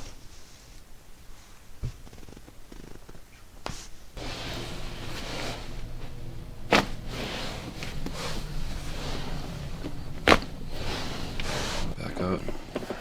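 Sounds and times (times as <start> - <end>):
quiet handling sounds: 0.0 - 13.0.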